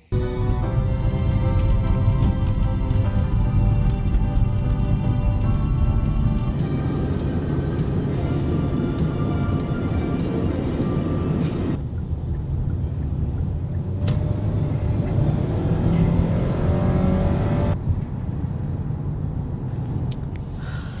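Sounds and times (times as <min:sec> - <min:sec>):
road vehicle rumbling: 0:00.0 - 0:21.0
faint rising engine whine: 0:00.1 - 0:11.8.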